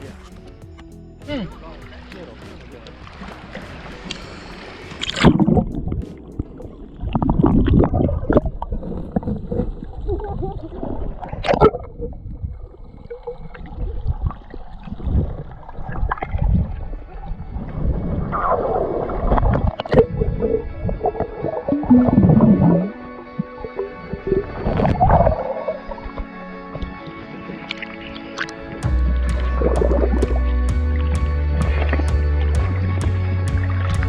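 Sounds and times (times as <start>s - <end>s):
water splash: 1.3s - 9.8s
muffled underwater sloshing: 1.6s - 30.2s.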